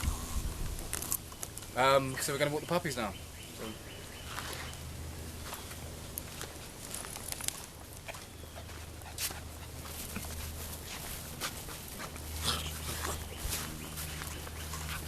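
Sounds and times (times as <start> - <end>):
puppies' clicks and scuffs: 5.7 - 15.0.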